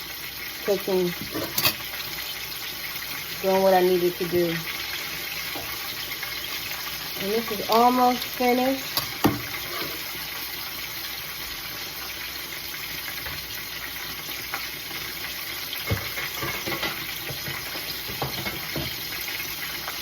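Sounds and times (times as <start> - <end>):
fish sizzling in hot grease: 0.0 - 20.0.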